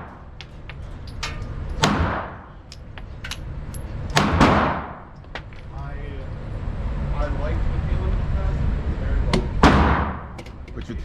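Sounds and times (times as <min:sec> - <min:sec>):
pistol shots with echo: 0:01.8 - 0:02.6, 0:04.2 - 0:05.1, 0:09.6 - 0:10.4.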